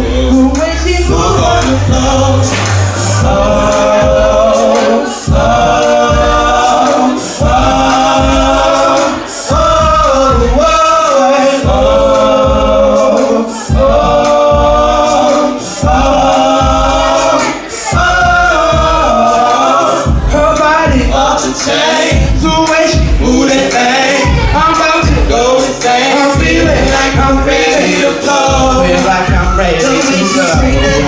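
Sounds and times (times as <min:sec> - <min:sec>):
steady low beat: 0:00.0 - 0:31.0
wordless sung vocal harmonies: 0:00.0 - 0:31.0.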